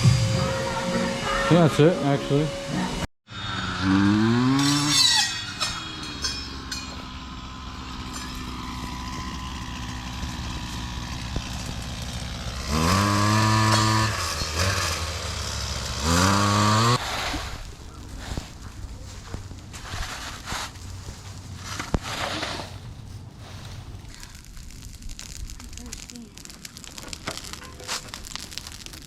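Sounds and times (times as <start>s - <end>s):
small gasoline engine revving: 3.3s - 5.0s, 7.0s - 17.0s.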